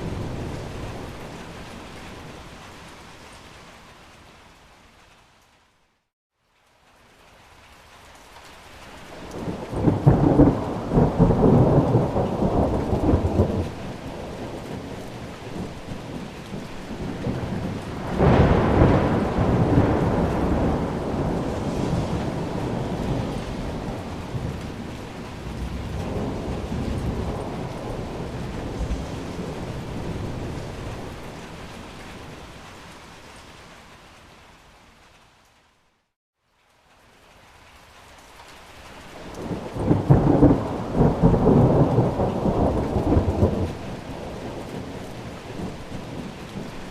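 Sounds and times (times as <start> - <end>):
heavy rain: 0.0 - 46.9
thunder rolling: 9.4 - 32.5, 39.3 - 46.9.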